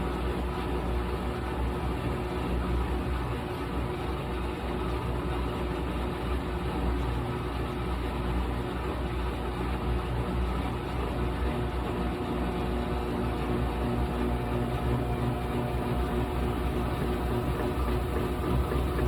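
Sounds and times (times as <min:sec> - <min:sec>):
washing machine motor hum: 0:00.0 - 0:19.0.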